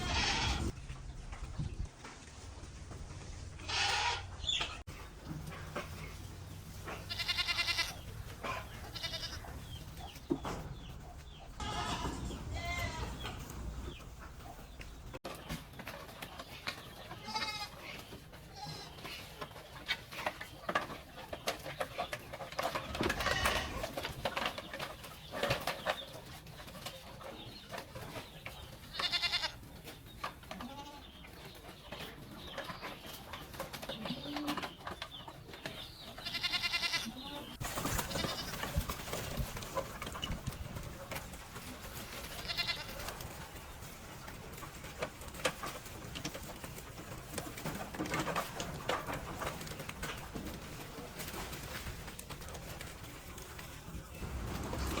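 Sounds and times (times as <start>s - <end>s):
goats bleating: 0.0s - 0.7s, 3.6s - 4.3s, 7.1s - 8.1s, 8.8s - 9.5s, 11.6s - 13.2s, 17.2s - 17.8s, 28.9s - 29.6s, 36.2s - 38.6s, 42.4s - 43.0s.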